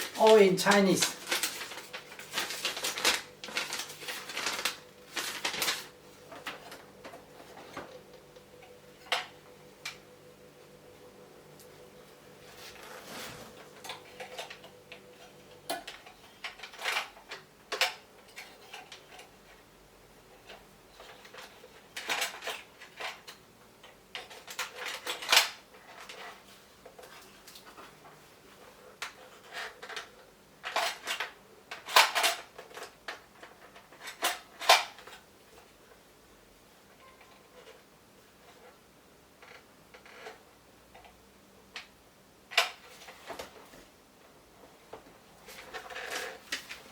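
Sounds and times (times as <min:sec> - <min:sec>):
toy parts clattering and rattling: 0:00.0 - 0:06.8, 0:15.8 - 0:19.4, 0:21.0 - 0:23.4
scraping rustle: 0:12.5 - 0:14.6.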